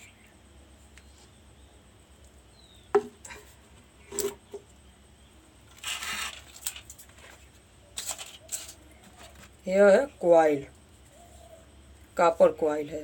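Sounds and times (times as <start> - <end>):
scraping rustle: 5.7 - 9.6.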